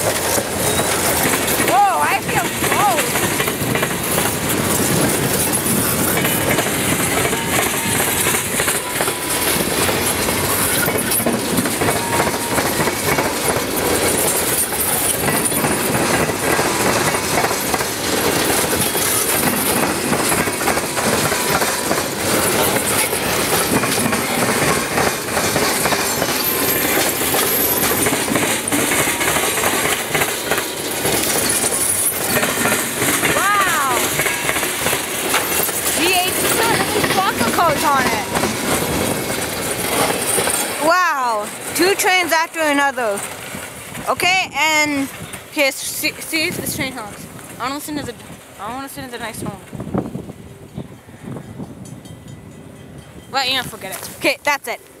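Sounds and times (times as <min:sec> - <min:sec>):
continuous rail noise: 0:00.0 - 0:55.0
train wheels clattering over crossing: 0:00.0 - 0:55.0.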